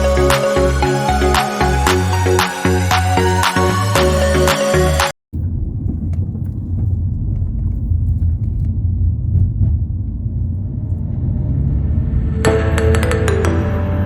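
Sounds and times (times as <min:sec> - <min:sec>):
music: 0:00.0 - 0:05.1, 0:12.4 - 0:14.0
steady low rumble: 0:00.0 - 0:13.4.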